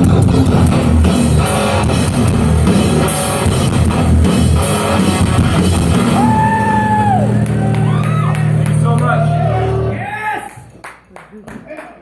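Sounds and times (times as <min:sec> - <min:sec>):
drum kit crashing cymbals: 0:00.0 - 0:06.6
distorted electric guitars: 0:00.0 - 0:10.7.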